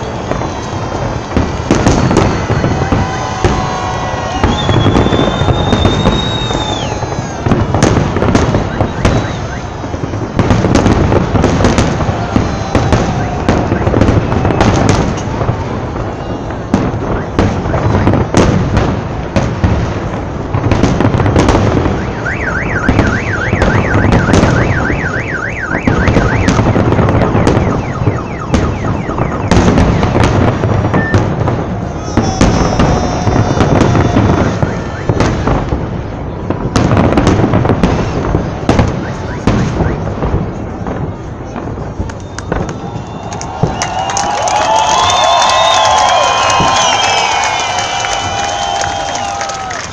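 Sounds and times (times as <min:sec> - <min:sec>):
fireworks booming: 0:00.0 - 0:49.9
fireworks crackling: 0:00.0 - 0:49.9
car alarm warbling: 0:21.9 - 0:30.2.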